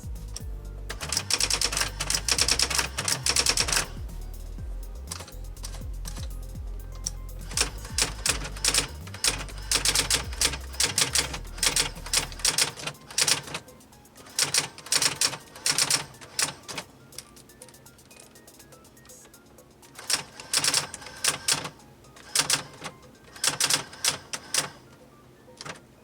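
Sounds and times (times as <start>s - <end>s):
typewriter printing clicks: 0.9s - 4.0s, 7.0s - 18.4s, 19.8s - 24.9s, 25.6s - 25.8s.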